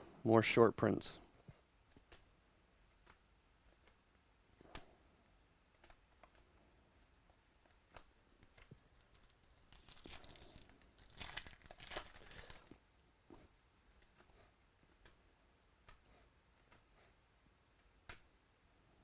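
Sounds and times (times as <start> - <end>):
foil pack tearing and crinkling: 9.0 - 12.7.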